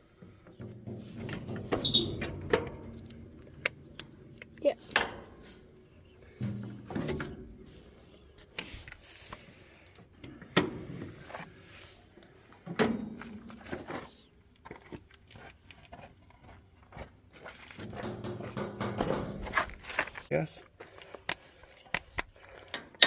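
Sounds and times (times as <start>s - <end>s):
metal clicks and knocks: 0.5s - 5.5s, 17.8s - 19.9s.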